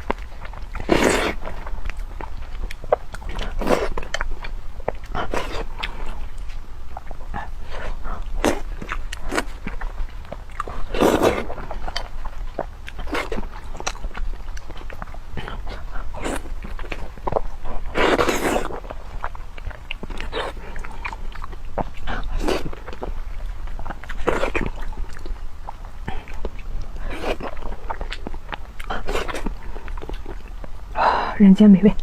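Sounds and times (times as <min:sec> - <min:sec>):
wet chewing mouth noises: 0:00.0 - 0:31.0.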